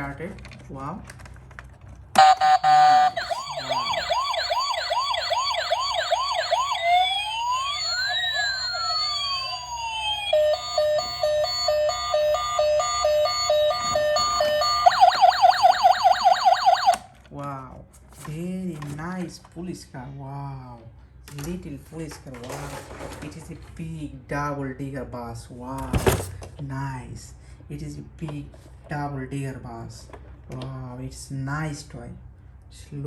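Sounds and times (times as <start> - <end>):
toy police siren: 2.2 - 17.0.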